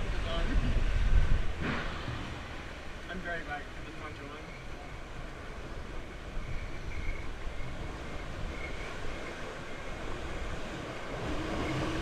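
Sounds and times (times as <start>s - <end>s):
rushing river rapids: 7.3s - 12.0s.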